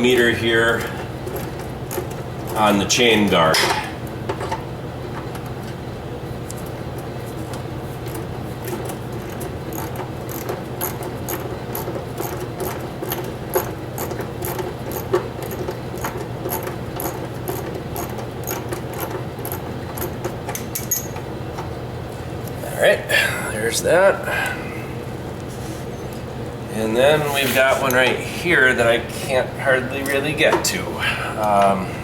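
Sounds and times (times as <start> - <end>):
hand ratchet clicking: 9.7 - 21.1.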